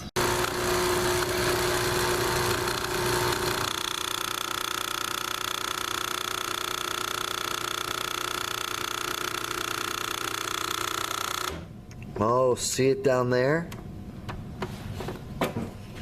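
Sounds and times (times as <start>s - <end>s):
espresso machine humming: 0.0s - 11.7s.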